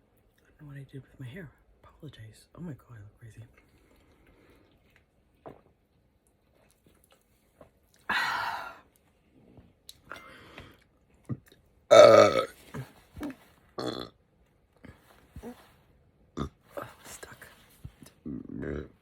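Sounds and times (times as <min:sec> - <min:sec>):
person burping: 0:11.3 - 0:14.2, 0:18.2 - 0:19.0.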